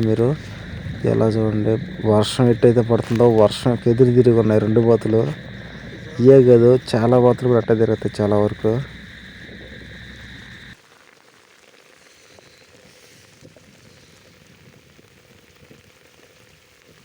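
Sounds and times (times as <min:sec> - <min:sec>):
drops ticking close by: 0:00.0 - 0:10.8
high-pitched whine: 0:00.0 - 0:10.8
low hum: 0:00.0 - 0:10.8
heavy rain falling: 0:00.0 - 0:11.1.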